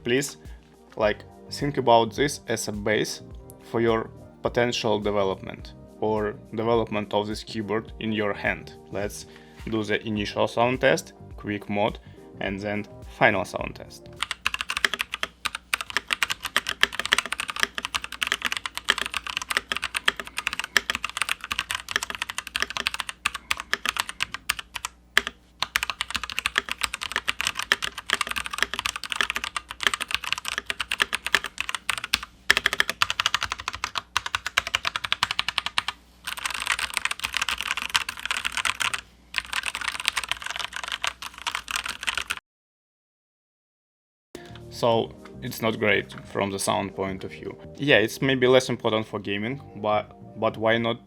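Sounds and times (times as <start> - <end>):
mechanical keyboard typing: 14.2 - 42.4.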